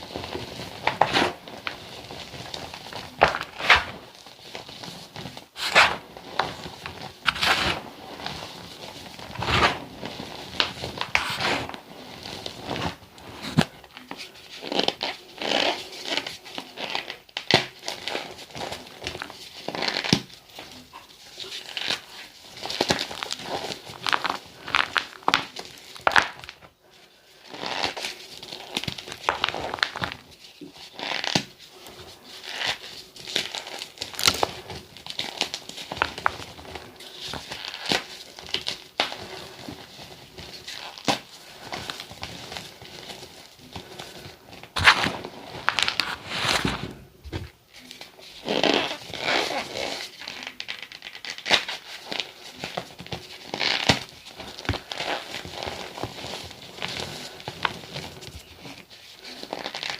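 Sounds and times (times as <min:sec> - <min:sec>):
chalk and sand crunching: 0:05.6 - 0:06.0, 0:07.2 - 0:07.8.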